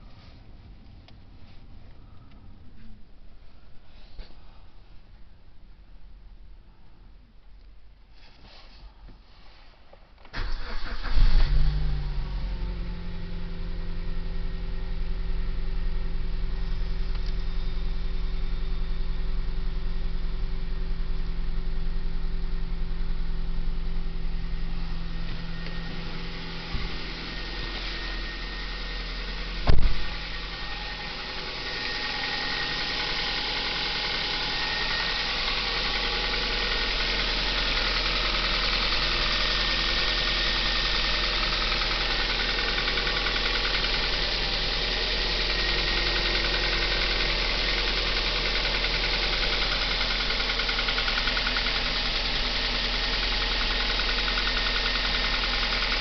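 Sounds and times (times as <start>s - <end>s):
car engine idling with knocking: 12.0s - 56.0s
loud thump: 29.6s - 30.1s.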